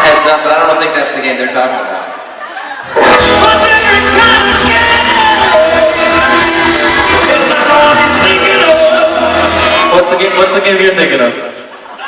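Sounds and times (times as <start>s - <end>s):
steady bass: 2.9s - 10.1s
live band music: 2.9s - 11.0s
person singing: 3.0s - 10.0s.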